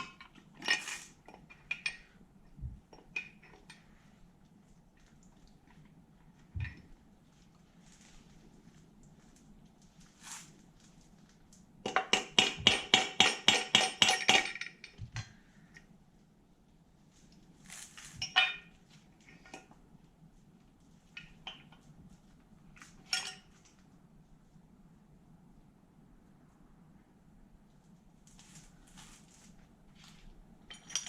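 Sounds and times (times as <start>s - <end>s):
metal parts and tools clinking: 0.0s - 3.8s, 11.9s - 15.3s, 18.1s - 19.7s, 22.7s - 23.8s, 30.6s - 31.0s.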